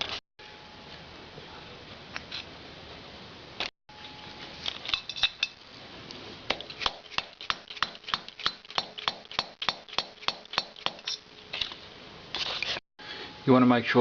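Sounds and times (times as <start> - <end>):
metal tapping: 6.5 - 11.2.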